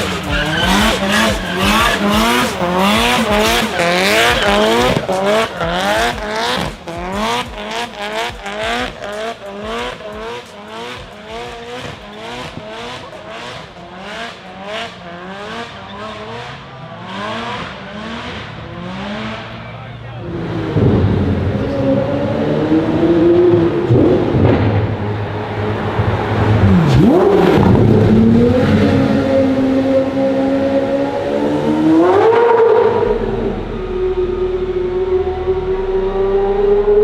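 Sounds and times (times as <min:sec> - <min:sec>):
tyre squeal: 0:00.0 - 0:05.1
car engine revving: 0:00.0 - 0:37.0.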